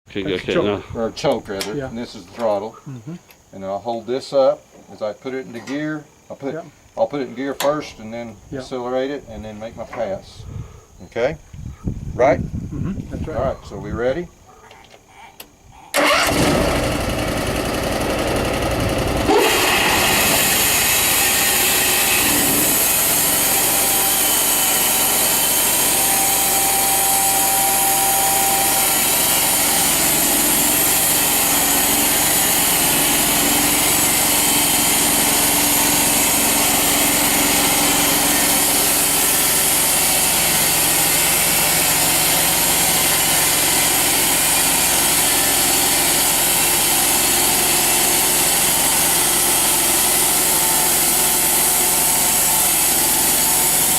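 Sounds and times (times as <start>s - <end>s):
band sawmill engine droning: 16.0s - 53.9s.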